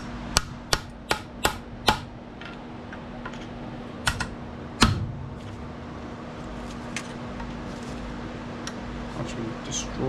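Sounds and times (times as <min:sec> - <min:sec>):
hammer striking metal chisel: 0:00.4 - 0:02.1.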